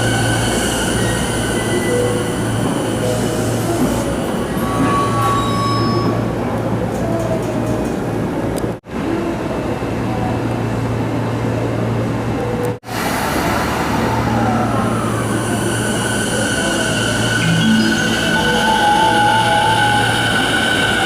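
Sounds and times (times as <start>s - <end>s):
electric train rumbling: 0.0s - 21.0s
steady high tones: 15.6s - 21.0s.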